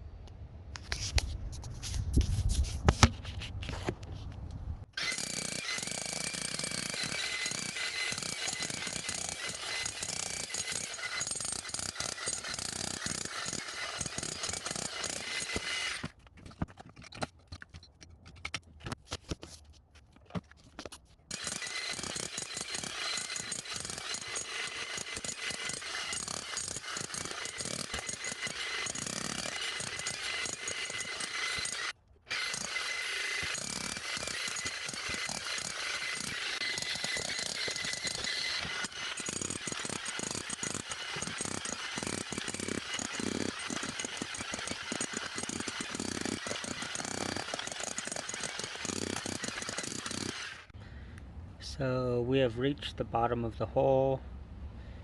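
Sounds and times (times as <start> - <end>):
jackhammer breaking concrete: 5.0 - 16.1, 21.3 - 50.7.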